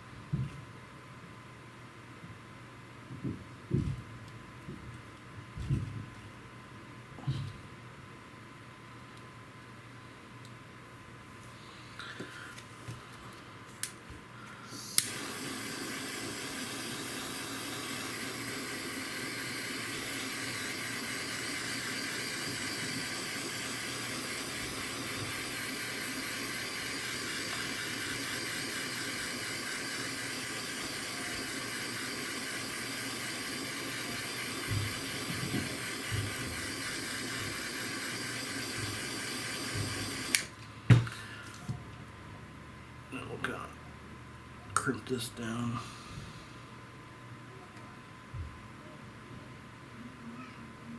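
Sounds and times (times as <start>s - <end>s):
heat gun hissing: 14.6s - 40.5s.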